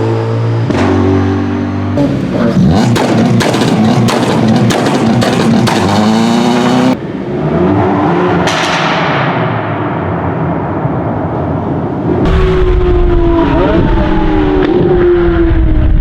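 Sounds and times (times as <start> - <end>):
car engine revving: 0.0 - 9.0
exhaust pops and bangs: 2.0 - 6.3.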